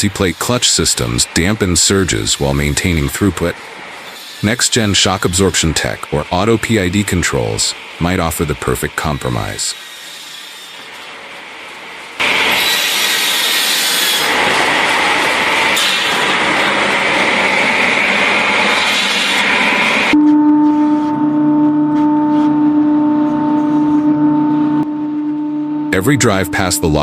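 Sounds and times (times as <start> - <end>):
droning machine hum: 14.2 - 27.0.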